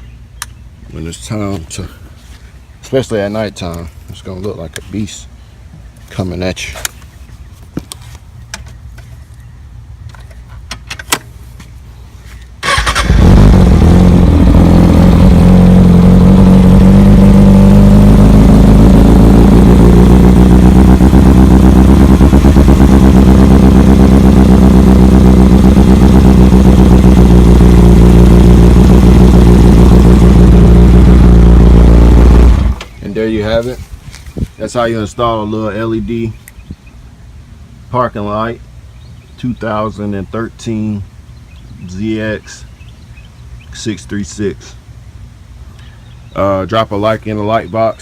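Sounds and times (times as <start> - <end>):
motorcycle engine starting and idling: 12.6 - 33.8.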